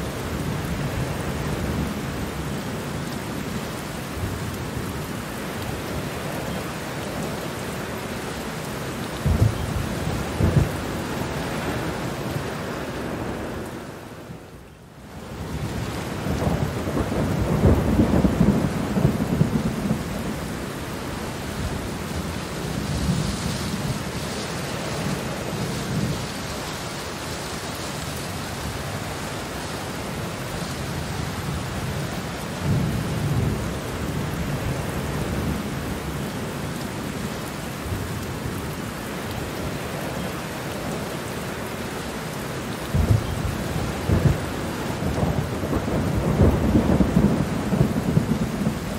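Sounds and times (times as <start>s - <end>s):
steady rain falling: 0.0s - 48.9s
rolling thunder: 9.2s - 11.0s, 15.4s - 20.6s, 42.9s - 48.9s.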